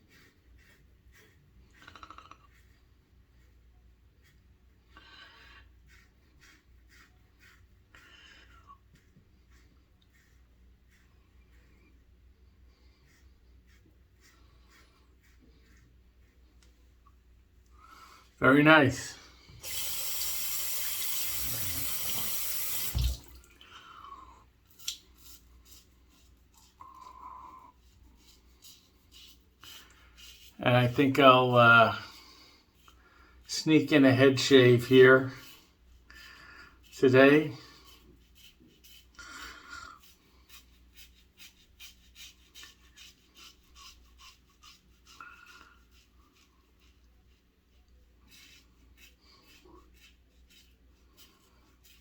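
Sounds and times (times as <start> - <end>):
razor scraping stubble: 18.5 - 23.4, 24.7 - 47.3
water running from a tap: 19.6 - 23.7.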